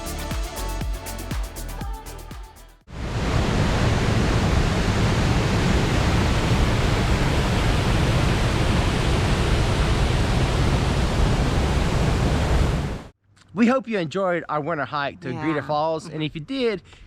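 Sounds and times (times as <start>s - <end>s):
background music: 0.0s - 2.9s
waterfall rushing roar: 3.0s - 13.1s.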